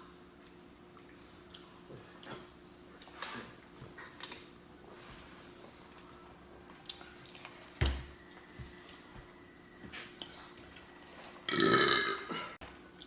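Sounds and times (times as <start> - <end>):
chewing and mouth clicks: 0.2 - 4.5, 6.7 - 8.4
loud burp: 11.5 - 12.6.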